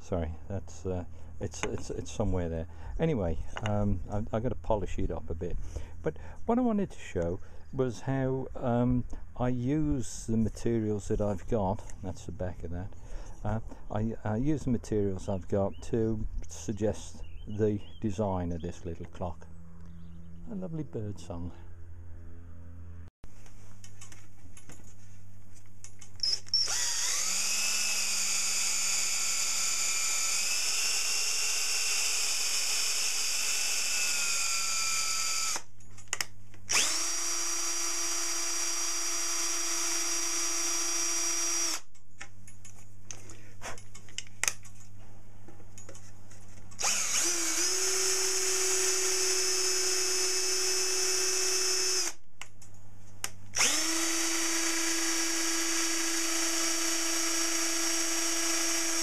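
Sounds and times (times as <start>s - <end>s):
low hum: 17.8s - 23.8s
electric drill spinning: 26.2s - 35.7s, 36.7s - 41.9s, 46.8s - 52.2s, 53.6s - 59.0s.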